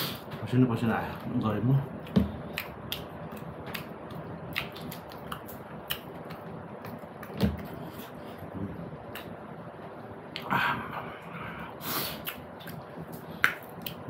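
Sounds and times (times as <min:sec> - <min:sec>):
chewing and lip smacks: 0:02.0 - 0:07.4, 0:12.1 - 0:14.0.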